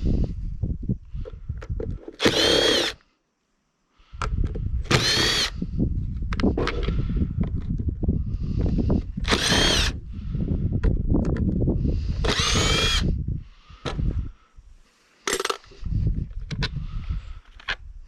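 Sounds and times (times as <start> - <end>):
power drill motor whine: 2.2 - 3.0, 4.9 - 5.6, 9.2 - 10.0, 12.2 - 13.2.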